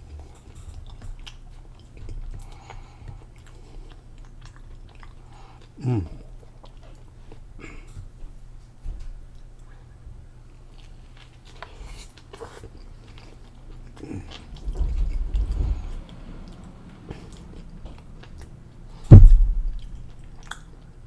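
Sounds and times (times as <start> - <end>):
chewing and biting food: 0.0 - 21.0
loud low thump: 19.1 - 20.1.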